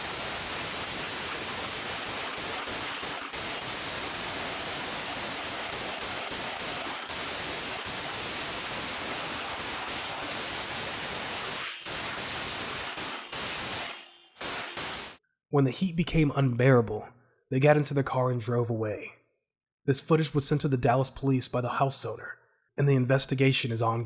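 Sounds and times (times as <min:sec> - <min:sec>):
static hiss: 0:00.0 - 0:15.2.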